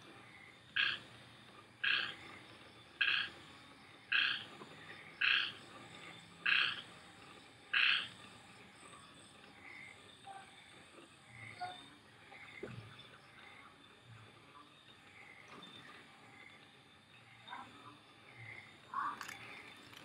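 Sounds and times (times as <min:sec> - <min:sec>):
frog croaking: 0:00.2 - 0:01.1, 0:01.8 - 0:04.5, 0:05.2 - 0:05.6, 0:06.4 - 0:06.9, 0:07.7 - 0:08.2, 0:11.2 - 0:12.7, 0:17.2 - 0:19.6.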